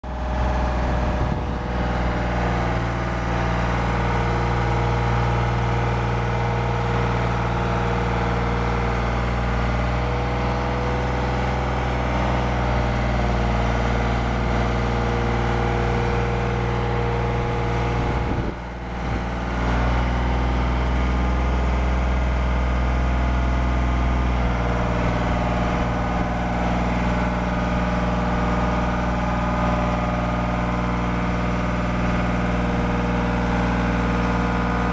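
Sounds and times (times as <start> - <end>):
scissor lift engine running: 0.0 - 34.9.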